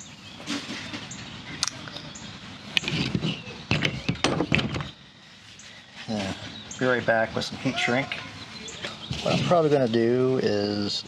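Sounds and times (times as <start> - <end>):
hard objects knocking and clattering: 2.8 - 4.9.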